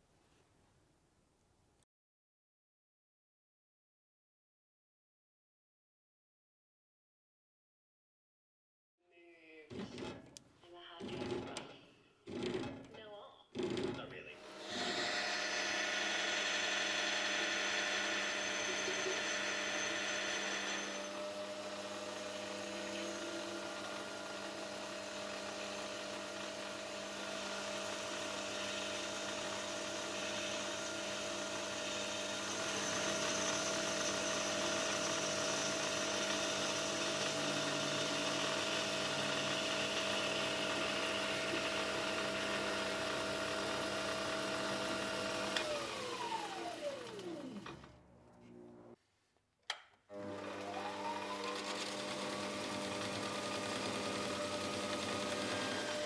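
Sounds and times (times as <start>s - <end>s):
machine tool motor running: 13.6s - 48.0s, 50.1s - 56.0s.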